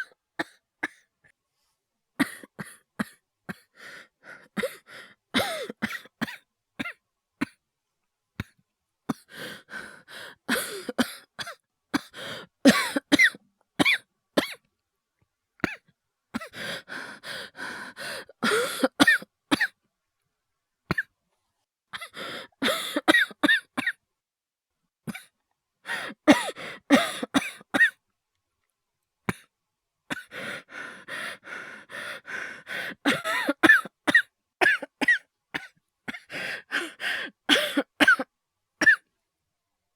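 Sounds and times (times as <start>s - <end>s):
person coughing harshly: 2.2s - 3.7s, 5.4s - 7.6s, 10.5s - 14.6s, 18.3s - 19.7s, 22.0s - 24.0s, 26.0s - 28.0s, 33.0s - 39.0s.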